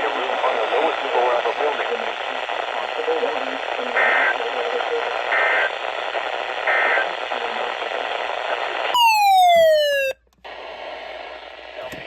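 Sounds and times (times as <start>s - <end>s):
radio hiss: 0.0s - 9.0s, 10.0s - 12.0s
electronic tone gliding down: 9.0s - 10.2s.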